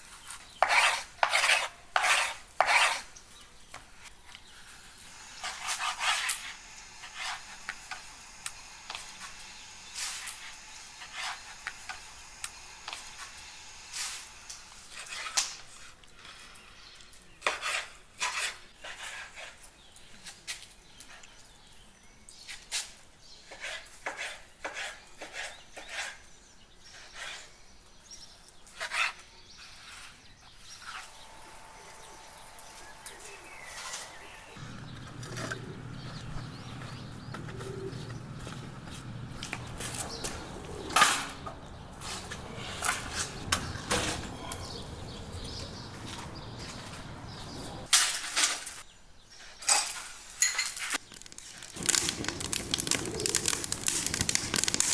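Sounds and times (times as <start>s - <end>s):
scraping strokes: 0.1s - 3.1s, 4.5s - 8.1s, 42.0s - 44.9s
kitchen utensils clinking: 49.7s - 54.9s.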